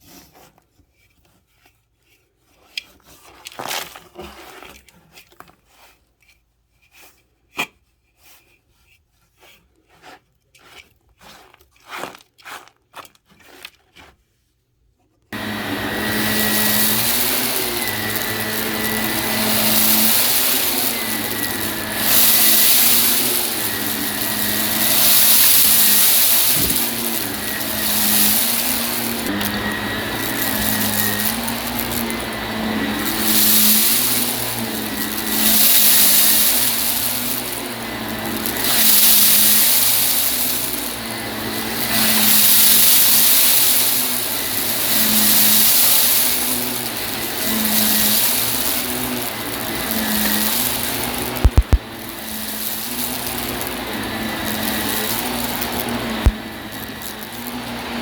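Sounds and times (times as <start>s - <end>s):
handling clicks and rustles: 15.4s - 57.6s
vacuum cleaner running: 15.4s - 58.0s.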